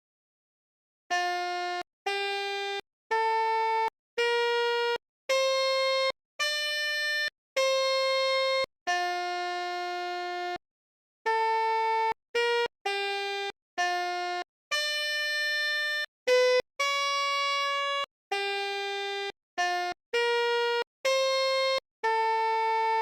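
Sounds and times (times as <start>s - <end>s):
melodica playing held notes: 1.1s - 10.5s, 11.3s - 23.0s.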